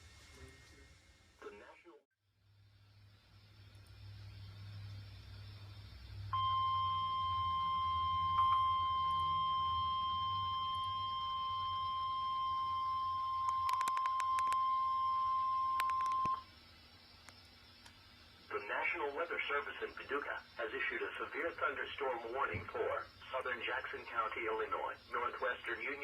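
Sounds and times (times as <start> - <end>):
steady high alarm beep: 6.3 - 16.4
static clicks: 13.3 - 16.4, 17.2 - 18.0.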